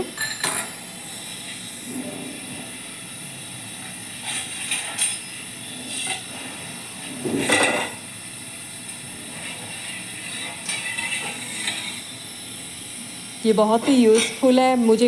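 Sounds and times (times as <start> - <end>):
kitchen utensils clinking: 0.0 - 0.8, 7.3 - 8.0, 13.8 - 14.6.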